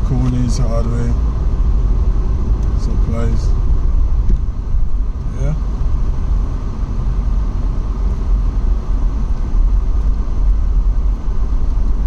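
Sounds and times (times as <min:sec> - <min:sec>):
car rumbling in motion: 0:00.0 - 0:12.0
road and wind noise: 0:00.0 - 0:12.0.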